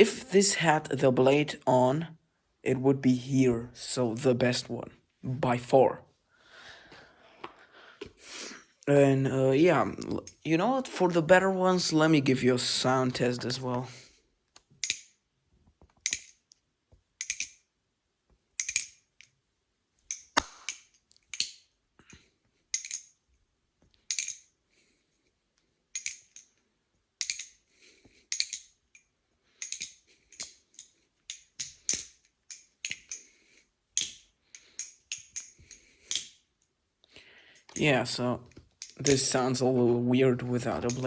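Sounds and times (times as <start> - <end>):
knife handles clacking: 14.8 - 15.1, 16.0 - 16.5, 17.2 - 17.6, 18.6 - 19.0, 20.1 - 21.6, 22.8 - 23.2, 24.1 - 24.5, 26.0 - 26.5, 27.2 - 27.7, 28.3 - 29.0, 29.6 - 33.4, 34.0 - 36.4, 37.6 - 41.0.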